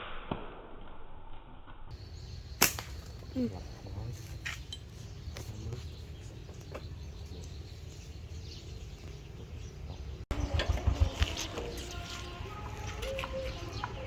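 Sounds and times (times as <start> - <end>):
bird chirps: 1.9 - 14.0
steady low rumble: 5.5 - 14.0.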